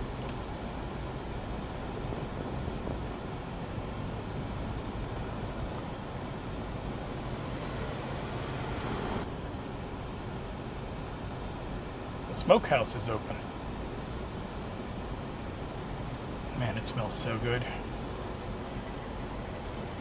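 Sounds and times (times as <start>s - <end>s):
car engine: 0.0s - 9.3s
tyres on road: 0.0s - 20.0s.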